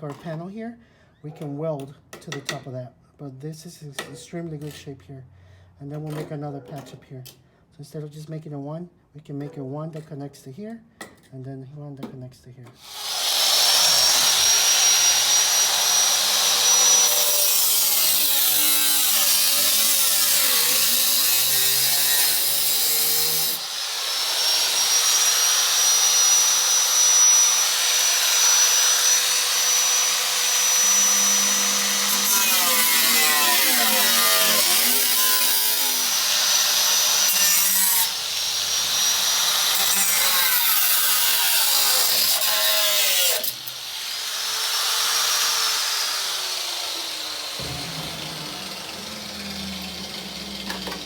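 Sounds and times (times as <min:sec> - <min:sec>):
cutting wheel grinding steel: 0:12.8 - 0:51.0.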